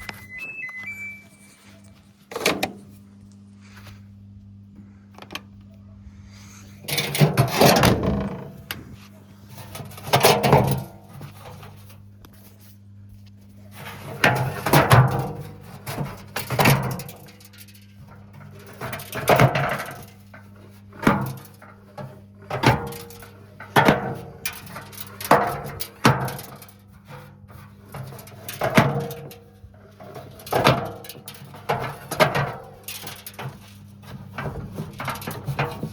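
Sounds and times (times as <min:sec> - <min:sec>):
washing machine motor hum: 0:06.8 - 0:12.2, 0:31.4 - 0:35.9.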